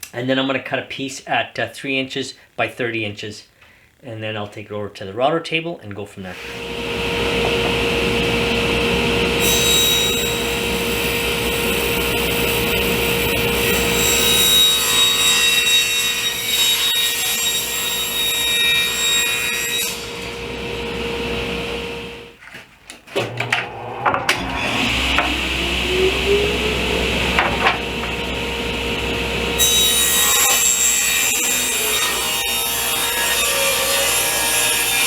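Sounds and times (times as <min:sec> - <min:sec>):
table saw cutting wood: 0:06.4 - 0:22.3, 0:23.2 - 0:35.0
motor starting up: 0:23.2 - 0:29.6.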